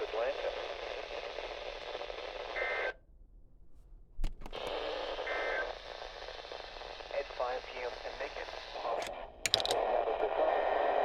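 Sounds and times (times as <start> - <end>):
radio receiver hiss: 4.4 - 11.0.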